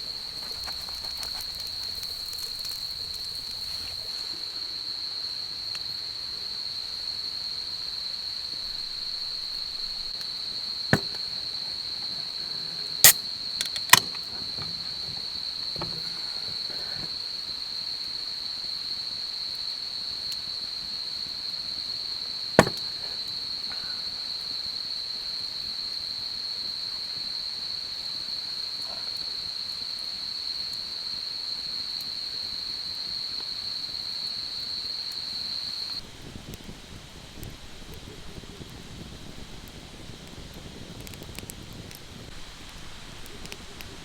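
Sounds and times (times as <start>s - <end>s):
sharp crack: 0.0s - 4.1s, 12.6s - 16.4s, 22.6s - 23.3s
crickets trilling: 0.0s - 44.0s.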